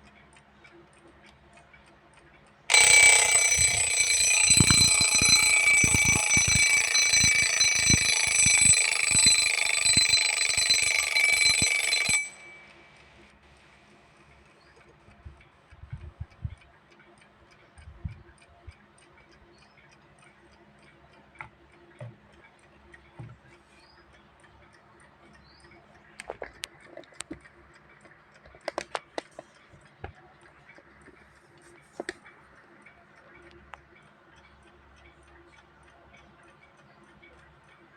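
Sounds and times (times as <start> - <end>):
alarm clock ticking: 2.5 - 13.4, 26.7 - 37.9.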